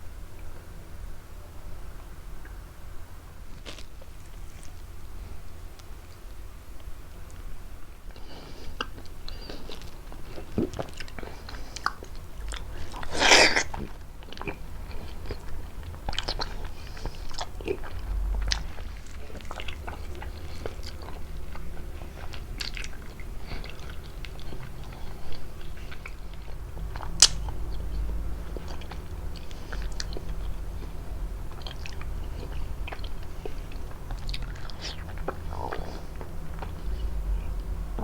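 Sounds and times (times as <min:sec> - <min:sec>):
crunchy chewing clicks: 0:08.1 - 0:38.0
wet chewing sounds: 0:08.1 - 0:38.0.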